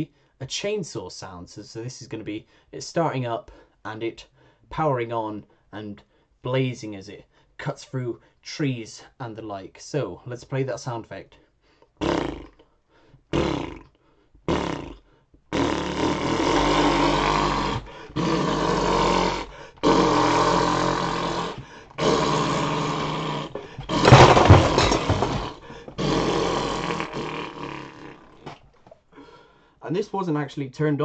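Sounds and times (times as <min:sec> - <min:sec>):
man imitating chainsaw: 0:12.0 - 0:12.6, 0:13.3 - 0:28.6.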